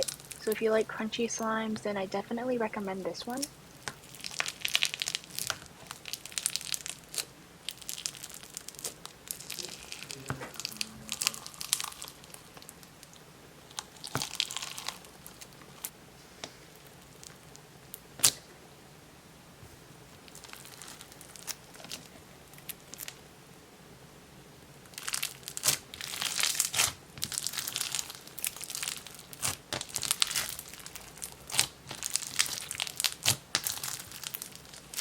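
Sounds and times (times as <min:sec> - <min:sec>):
slime squeezed by hand crackling: 0:00.0 - 0:00.6, 0:03.3 - 0:15.9, 0:16.8 - 0:18.5, 0:24.9 - 0:35.0.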